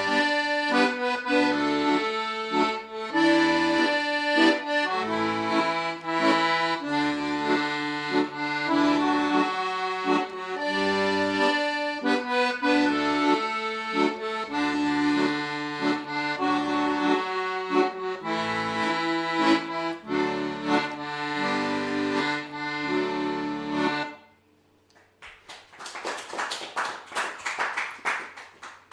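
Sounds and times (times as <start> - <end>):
accordion melody: 0.0 - 24.9
people applauding: 24.9 - 28.9.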